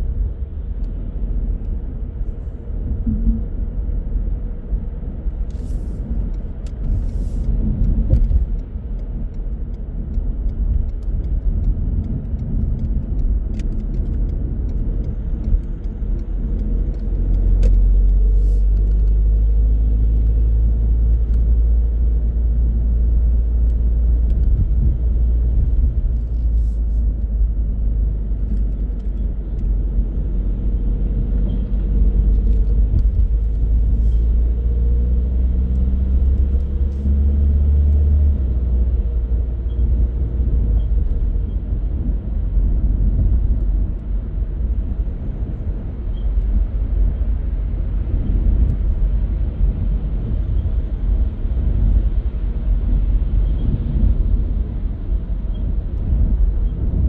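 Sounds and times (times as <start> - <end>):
car engine and tyre rumble: 0.0 - 57.0.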